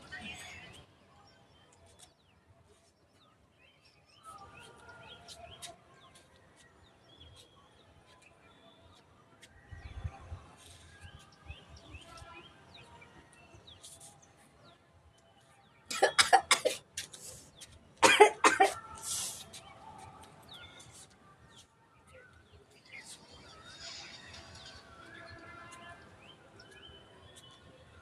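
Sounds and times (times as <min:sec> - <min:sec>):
faint birds chirping: 0:00.0 - 0:28.0
person coughing: 0:15.9 - 0:16.8, 0:18.0 - 0:18.8.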